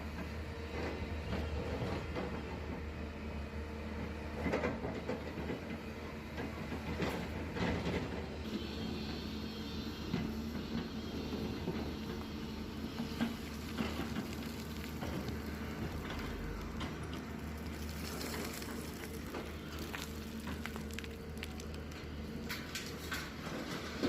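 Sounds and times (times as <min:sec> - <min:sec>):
excavator diesel engine running: 0:00.0 - 0:24.0
soil and stones clattering: 0:12.9 - 0:24.0.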